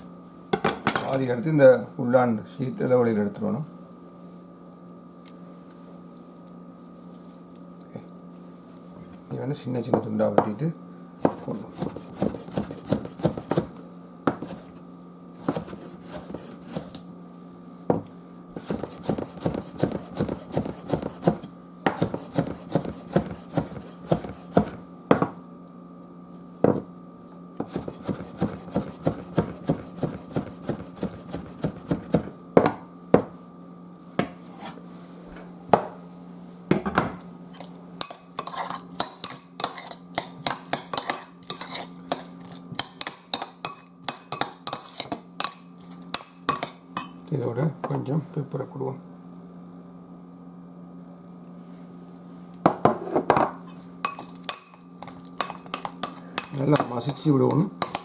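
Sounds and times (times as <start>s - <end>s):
steady low hum: 0.0s - 58.0s
knife chopping on cutting board: 11.2s - 14.7s, 15.4s - 17.0s, 18.6s - 25.4s, 27.6s - 33.3s.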